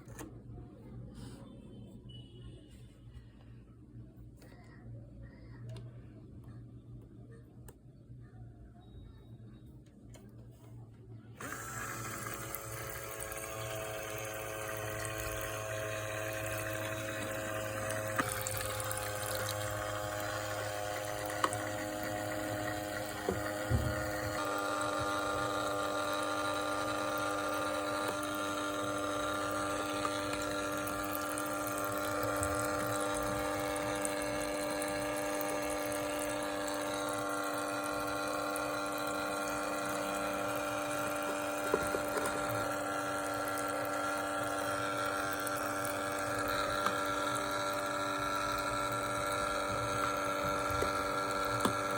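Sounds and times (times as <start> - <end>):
small water pump whining: 11.3 - 51.9.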